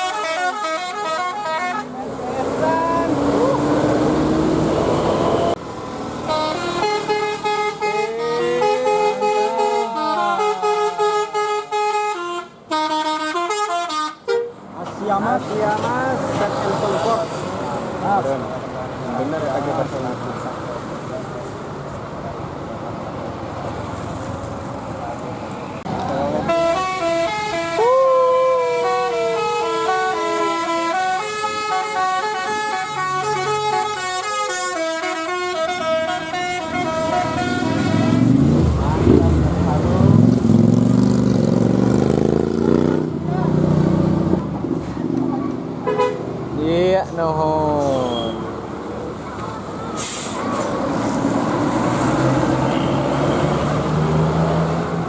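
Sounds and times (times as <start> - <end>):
multi-tone musical bus horn melody: 0.0 - 2.1, 6.2 - 14.6, 26.3 - 28.0, 28.6 - 39.2, 45.8 - 46.3
diesel bus engine passing: 0.0 - 12.7, 14.2 - 55.0
long held horn tone: 6.3 - 14.5
burst of hiss: 49.9 - 51.2.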